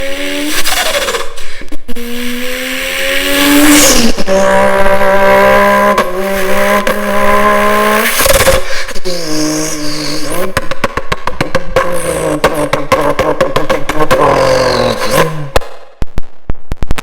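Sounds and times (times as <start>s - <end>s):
person imitating engine with mouth: 8.3s - 15.7s.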